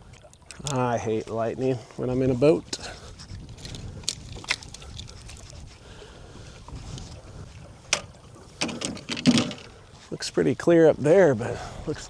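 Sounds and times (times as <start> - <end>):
wind rumbling on microphone: 0.0 - 12.0
sharp knocks and clicks: 7.9 - 9.7.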